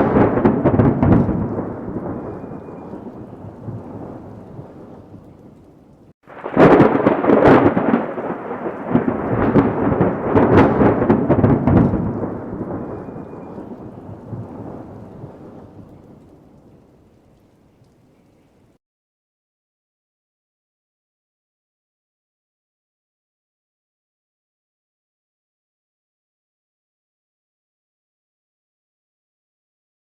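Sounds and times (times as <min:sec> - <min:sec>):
thunder crack and rumble: 0:00.0 - 0:18.0.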